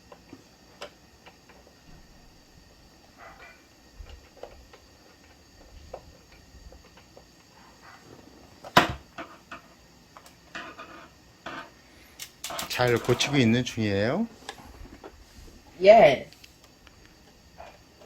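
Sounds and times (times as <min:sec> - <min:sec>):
plastic toy clicking and knocking: 0:11.5 - 0:13.4.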